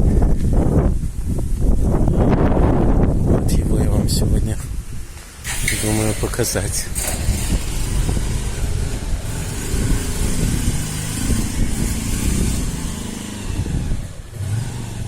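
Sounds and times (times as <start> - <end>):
vehicle engine passing: 5.2 - 15.0.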